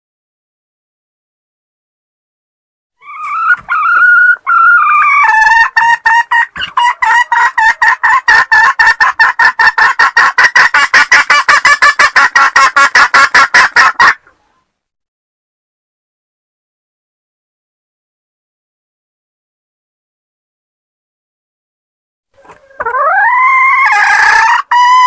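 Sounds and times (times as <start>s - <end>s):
hen cackling: 3.0s - 14.6s, 22.4s - 25.0s.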